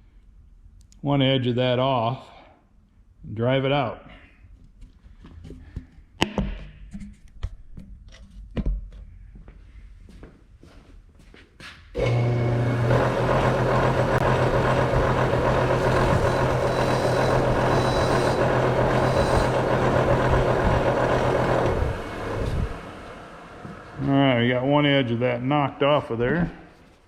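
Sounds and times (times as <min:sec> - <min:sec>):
bench grinder switch: 0:12.0 - 0:22.8
bench grinder motor humming: 0:12.0 - 0:24.0.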